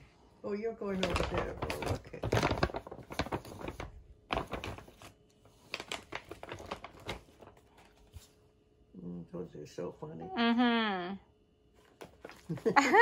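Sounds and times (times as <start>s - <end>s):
paper rustling and crinkling: 0.9s - 8.5s, 11.8s - 12.8s.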